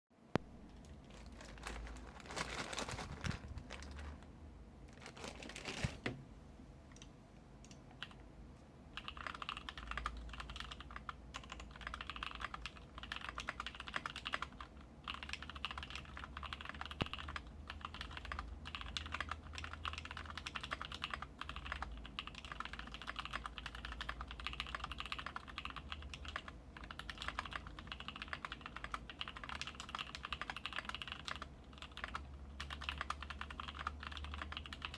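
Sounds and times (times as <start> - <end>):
typing on mechanical keyboard: 7.0 - 8.2, 9.0 - 34.9.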